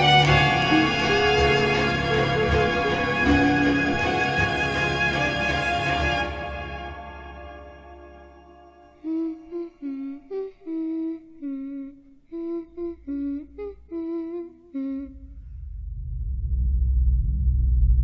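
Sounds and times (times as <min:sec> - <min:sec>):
person humming a tune: 0:09.0 - 0:15.4.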